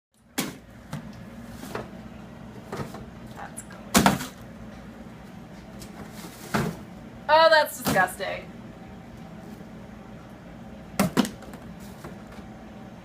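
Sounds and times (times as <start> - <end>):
steady low hum: 0.2 - 13.0.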